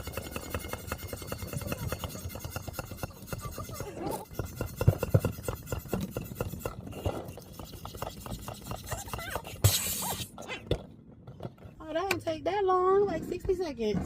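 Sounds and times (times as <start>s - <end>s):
rasping and rubbing noises: 0.0s - 10.6s.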